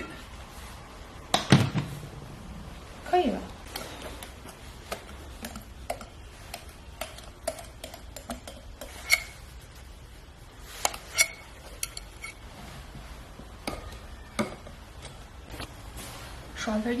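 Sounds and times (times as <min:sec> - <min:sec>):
utensil tapping and scraping bowl: 0:04.5 - 0:09.5.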